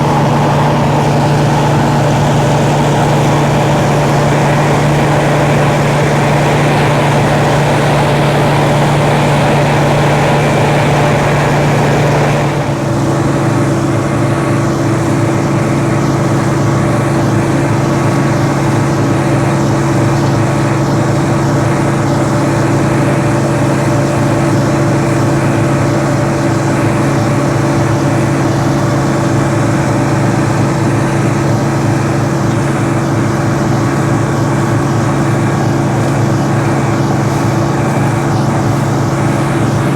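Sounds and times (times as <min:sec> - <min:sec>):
combine harvester engine hum: 0:00.0 - 0:39.9.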